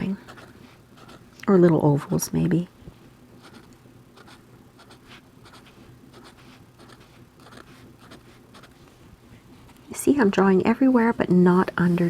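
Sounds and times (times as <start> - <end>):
marker scratching on paper: 3.4 - 8.8.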